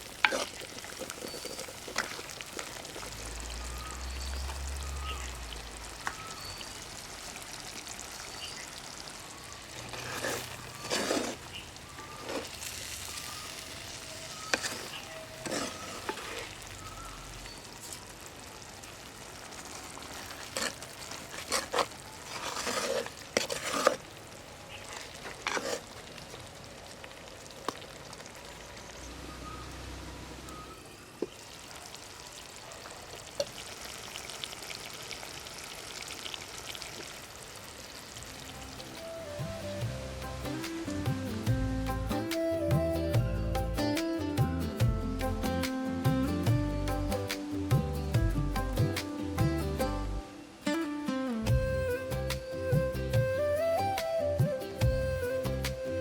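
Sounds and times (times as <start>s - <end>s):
curry sizzling in a pot: 0.0s - 42.0s
spoon scraping a pot: 0.2s - 2.2s, 9.9s - 11.4s, 14.5s - 16.5s, 20.4s - 24.0s, 25.4s - 25.9s.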